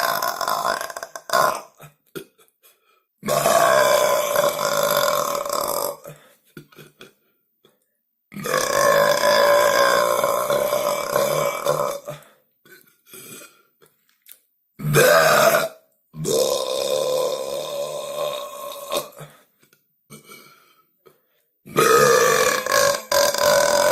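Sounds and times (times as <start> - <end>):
boy burping loudly: 0.0 - 2.4, 3.2 - 7.1, 8.3 - 13.5, 14.8 - 19.3, 21.7 - 23.9.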